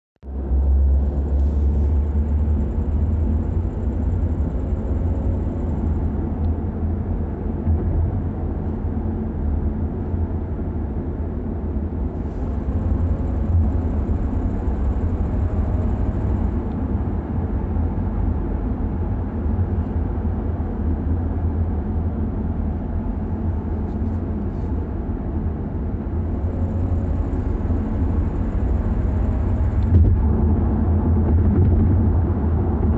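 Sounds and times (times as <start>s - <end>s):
car engine running: 0.2s - 32.9s.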